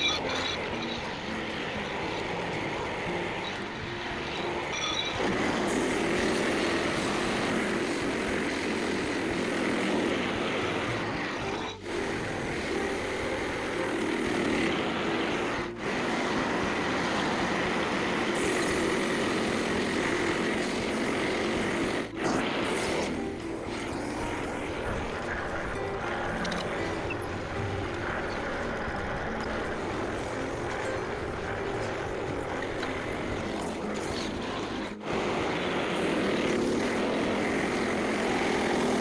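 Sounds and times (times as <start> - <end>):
band sawmill running: 0.0 - 39.0.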